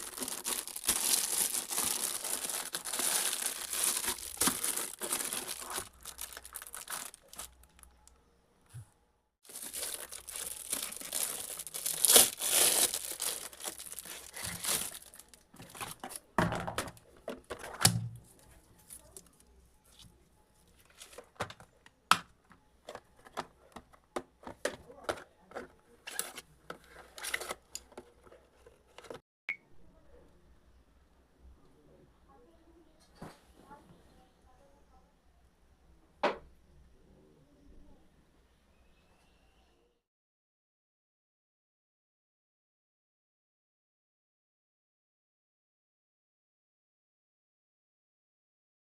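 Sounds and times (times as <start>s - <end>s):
packaging rustling and tearing: 0.0s - 7.9s, 9.5s - 16.2s, 25.1s - 28.0s.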